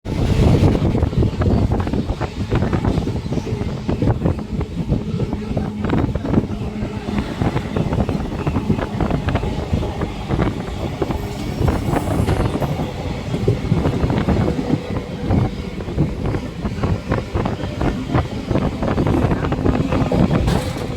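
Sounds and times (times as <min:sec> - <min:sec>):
train rumble: 0:00.0 - 0:20.9
wheels clattering on track: 0:00.5 - 0:20.9.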